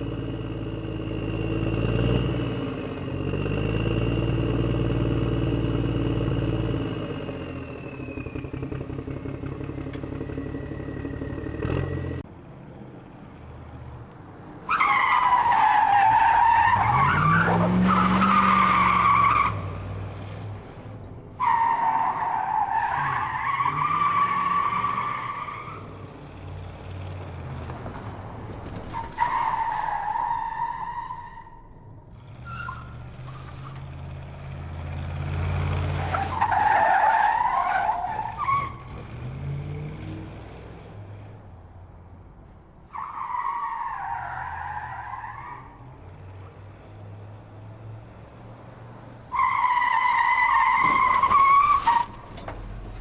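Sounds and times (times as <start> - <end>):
tyres screeching: 14.6 - 19.9, 49.2 - 53.0.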